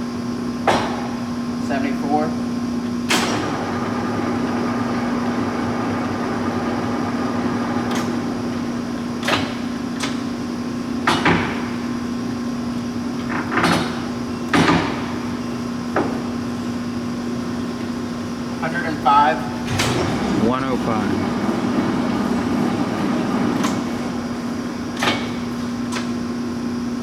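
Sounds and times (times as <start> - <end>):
lathe humming: 20.0 - 24.6.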